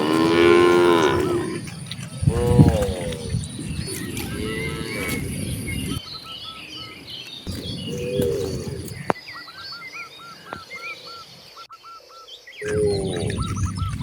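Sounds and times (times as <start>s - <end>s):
cattle mooing: 0.0s - 6.0s
birds chirping: 0.0s - 14.0s.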